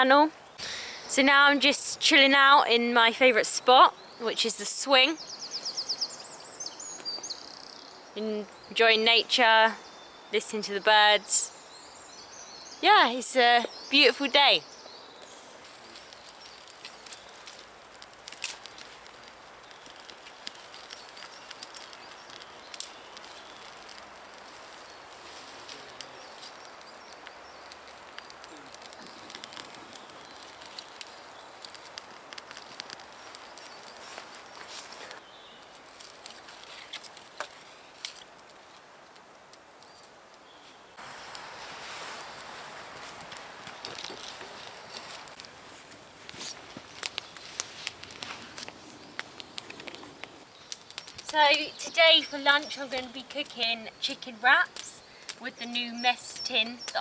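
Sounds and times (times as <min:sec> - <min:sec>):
faint steady hiss: 0:00.0 - 0:57.0
light clicks and rustles: 0:15.2 - 0:40.2, 0:41.8 - 0:53.8.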